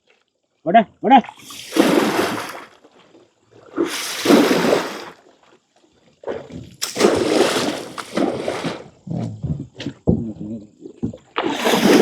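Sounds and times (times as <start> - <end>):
water splashing: 1.2 - 5.4, 6.3 - 9.0, 11.4 - 12.0.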